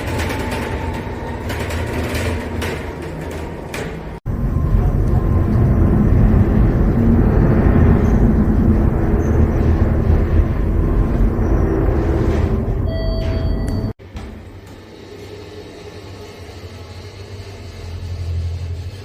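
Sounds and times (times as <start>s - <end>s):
lift car rumbling: 0.0s - 19.0s
electronic beep: 12.8s - 14.0s.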